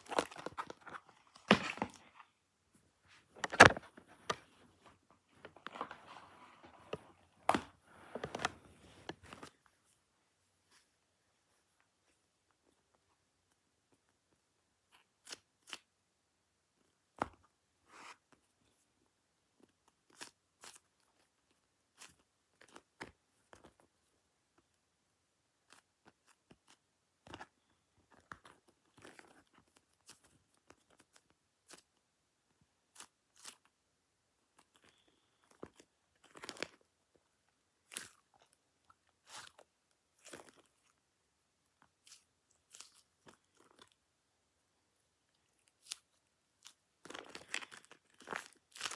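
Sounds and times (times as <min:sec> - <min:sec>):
squishy toys crinkling and tapping: 0:00.0 - 0:02.3, 0:21.9 - 0:23.9, 0:25.7 - 0:32.0, 0:34.5 - 0:37.0, 0:37.8 - 0:41.0, 0:45.6 - 0:48.9.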